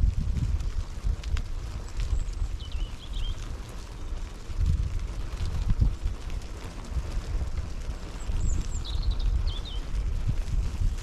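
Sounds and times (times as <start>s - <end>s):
wind on microphone: 0.0s - 11.0s
bird chirping: 2.2s - 3.4s, 8.3s - 9.9s.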